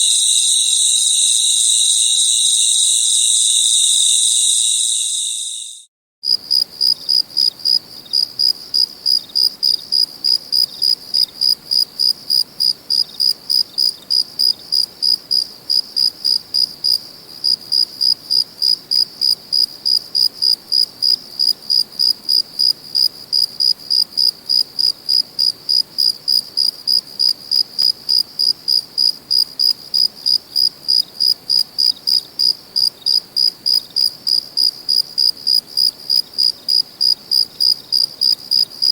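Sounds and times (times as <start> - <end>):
cricket chirping: 0.0 - 5.9, 30.2 - 38.9.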